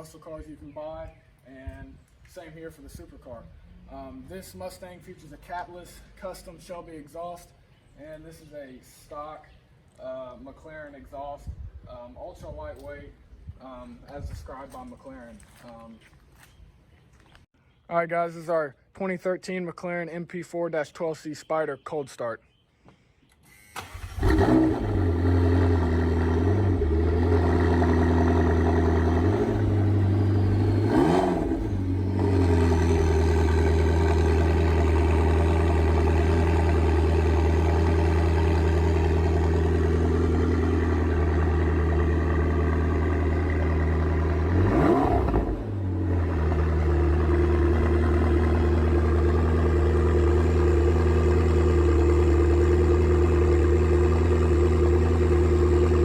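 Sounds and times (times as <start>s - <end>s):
car engine idling and revving: 23.8s - 56.0s.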